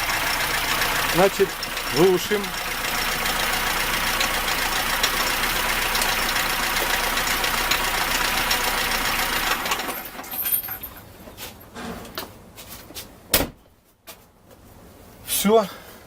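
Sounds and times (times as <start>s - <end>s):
clanking engine knock: 0.0s - 10.1s
car engine idling: 0.0s - 10.8s.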